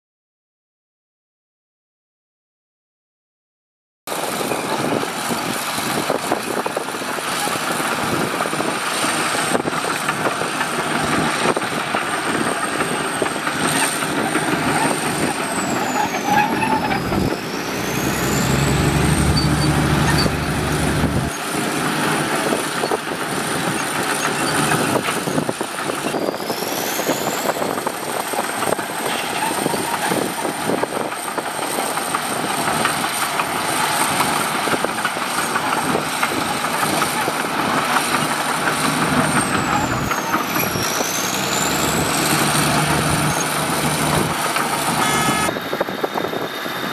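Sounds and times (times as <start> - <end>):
heavy diesel engines under load: 4.1 - 46.9
deep heavy engine note: 15.3 - 21.4.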